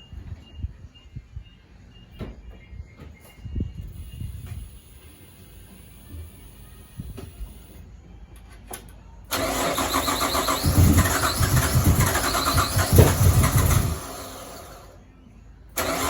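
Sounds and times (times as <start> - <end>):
car engine starting and running: 9.3 - 15.0, 15.8 - 16.0.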